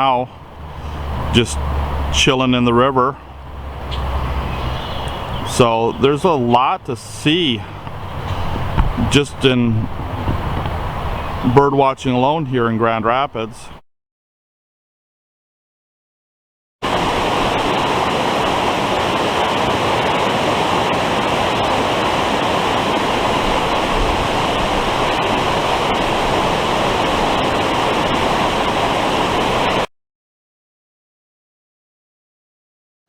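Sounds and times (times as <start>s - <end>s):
flowing river water: 0.0s - 11.6s, 16.8s - 29.9s.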